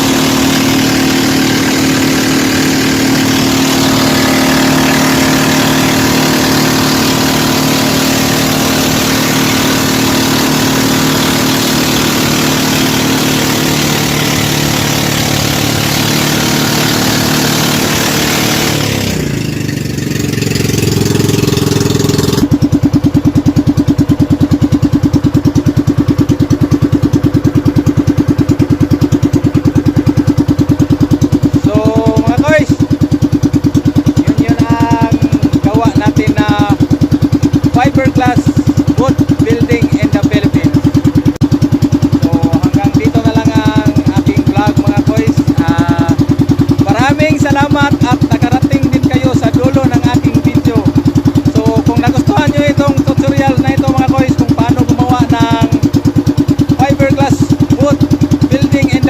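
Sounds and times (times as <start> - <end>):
engine running steadily: 0.0 - 59.0
rapidly pulsing engine: 0.0 - 59.0.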